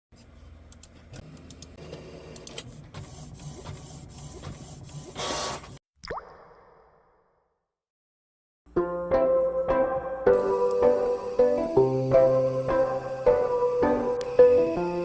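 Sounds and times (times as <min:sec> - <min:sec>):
loud hiss: 0:10.5 - 0:15.0.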